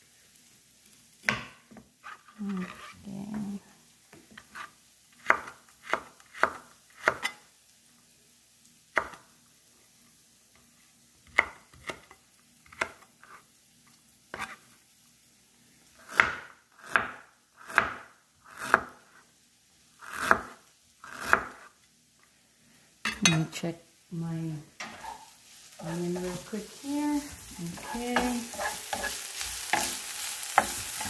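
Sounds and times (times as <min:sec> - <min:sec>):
knife chopping on cutting board: 0:04.5 - 0:07.3, 0:16.1 - 0:19.0, 0:20.1 - 0:21.7.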